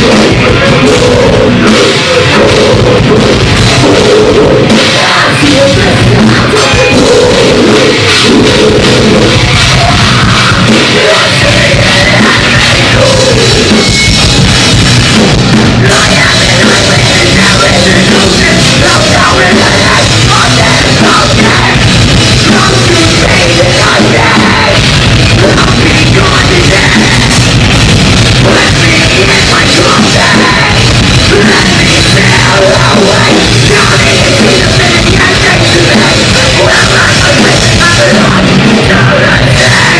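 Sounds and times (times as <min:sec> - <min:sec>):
screamed vocals: 0:00.0 - 0:13.7, 0:28.4 - 0:39.9
bass guitar: 0:00.0 - 0:39.9
drum kit: 0:00.0 - 0:39.9
electric guitars: 0:00.0 - 0:39.9.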